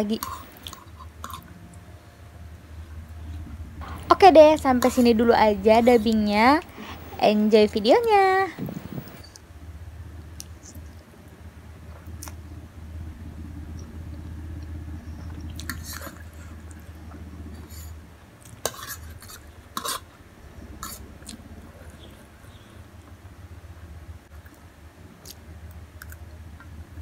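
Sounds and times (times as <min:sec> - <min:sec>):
low hum: 0:00.0 - 0:18.3, 0:19.1 - 0:27.0
chewing: 0:15.2 - 0:17.2.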